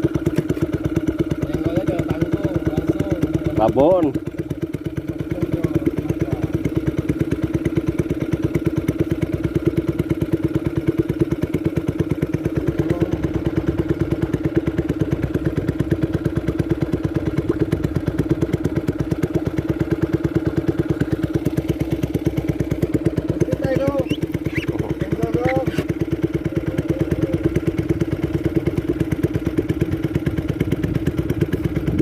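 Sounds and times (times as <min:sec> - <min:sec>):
small boat engine putter: 0:00.0 - 0:32.0.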